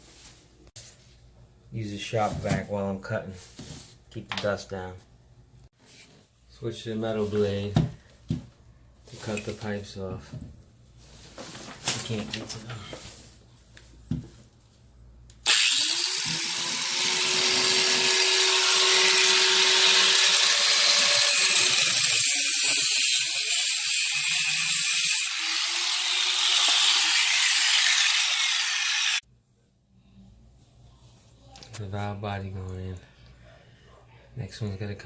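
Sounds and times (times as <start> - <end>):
power saw cutting metal pipe: 15.5 - 29.2.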